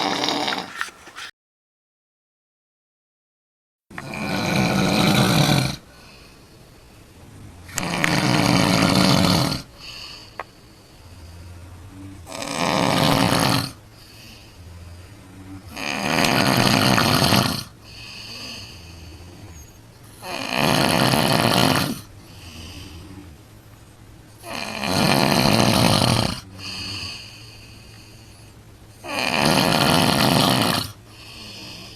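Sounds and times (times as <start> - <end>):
woman snoring loudly: 0.0 - 0.8, 4.0 - 6.1, 7.3 - 23.4, 24.4 - 28.4, 29.0 - 31.9
quiet breathing: 4.0 - 31.9.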